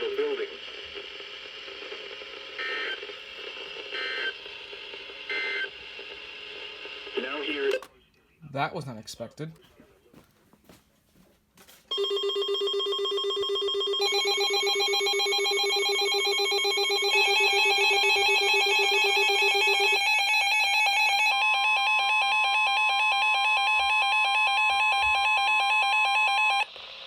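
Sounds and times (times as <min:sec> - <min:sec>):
weather radio alert alarm: 0:13.3 - 0:26.7.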